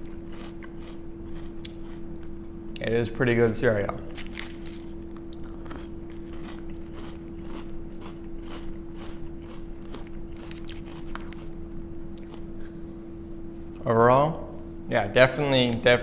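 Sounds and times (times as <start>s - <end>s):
person chewing crunchy cereal: 0.0s - 2.3s, 4.0s - 12.8s
steady hum: 0.0s - 16.0s.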